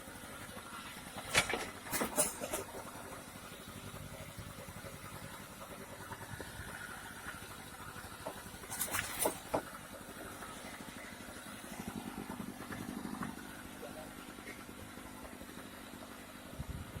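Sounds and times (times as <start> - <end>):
boat engine running: 0.0 - 17.0
sharp knocks or splashes: 8.2 - 9.8.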